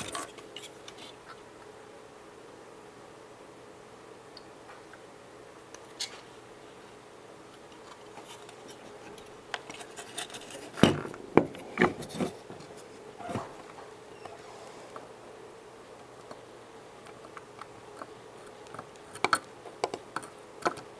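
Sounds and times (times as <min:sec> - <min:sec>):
handling clicks and scrapes: 0:00.0 - 0:01.4, 0:07.5 - 0:15.1.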